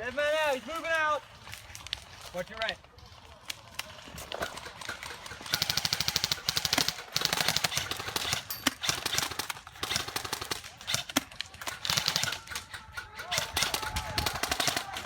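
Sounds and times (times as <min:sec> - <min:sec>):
airsoft guns firing full-auto bursts: 0:04.1 - 0:15.0
single airsoft shots and clicks: 0:04.4 - 0:15.0.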